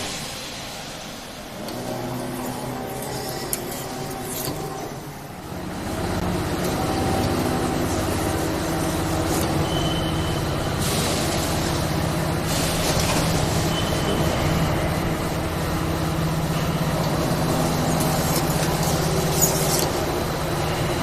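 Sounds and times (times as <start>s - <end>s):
hiss: 0.0s - 4.5s, 8.7s - 15.5s
machine humming and rumbling: 0.0s - 21.0s.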